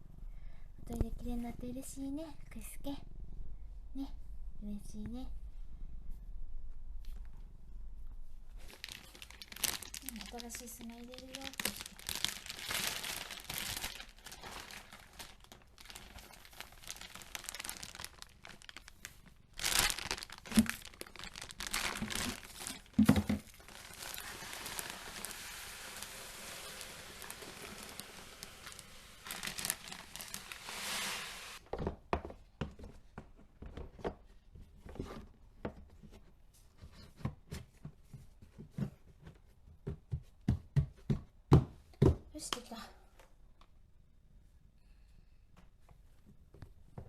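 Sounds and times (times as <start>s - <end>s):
small clicks and rustles: 8.6s - 12.6s, 13.2s - 25.4s
plastic bag crinkling and rustling: 8.6s - 31.7s
litter pouring into a box: 19.7s - 31.6s.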